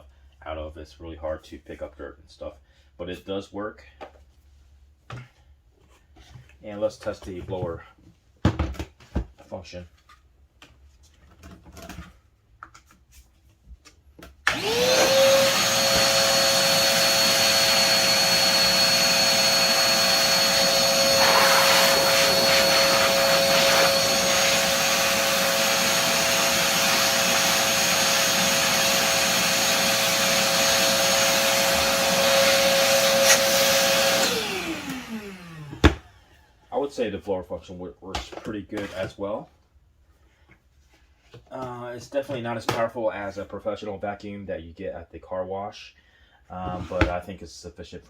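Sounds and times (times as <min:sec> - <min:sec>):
vacuum motor whining: 0:14.5 - 0:36.2.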